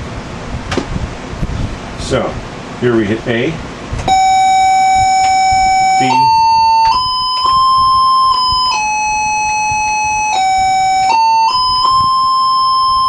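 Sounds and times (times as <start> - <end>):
held electronic notes: 4.1 - 13.0.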